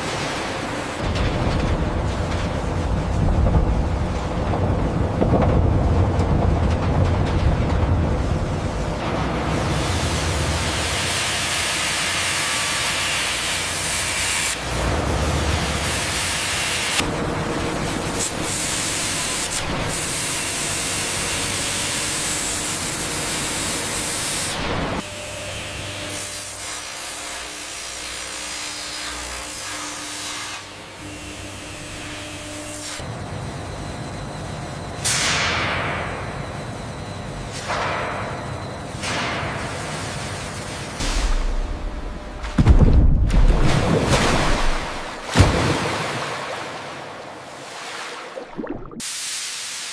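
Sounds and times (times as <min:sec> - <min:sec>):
factory machinery rushing noise: 0:00.0 - 0:27.0, 0:30.6 - 0:42.6.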